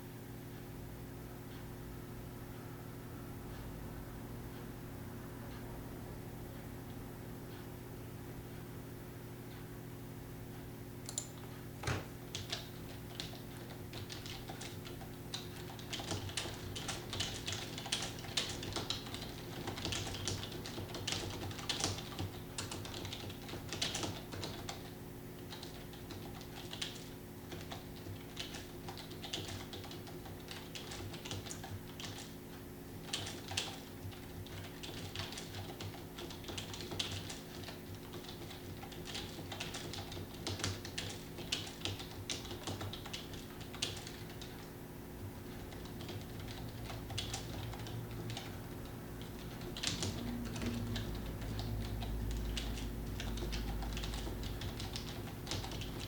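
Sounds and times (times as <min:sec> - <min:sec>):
steady low hum: 0:00.0 - 0:56.0
fast keyboard typing: 0:11.1 - 0:32.4, 0:33.0 - 0:56.0.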